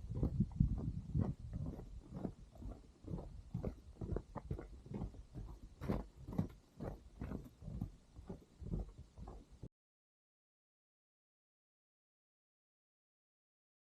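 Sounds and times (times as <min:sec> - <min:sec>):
footsteps crunching through snow: 0:00.1 - 0:09.4.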